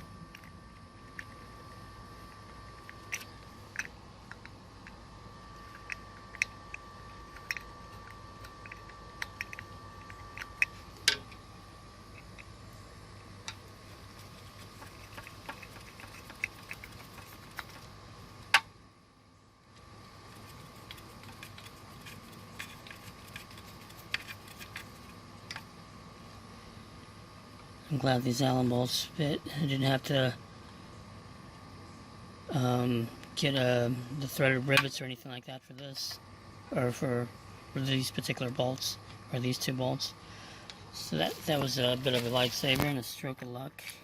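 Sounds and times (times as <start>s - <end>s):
faint high hum: 0.0s - 44.0s
small parts clicking and tapping: 0.3s - 1.4s, 2.4s - 5.0s, 5.7s - 11.4s, 14.2s - 17.9s, 20.3s - 25.7s.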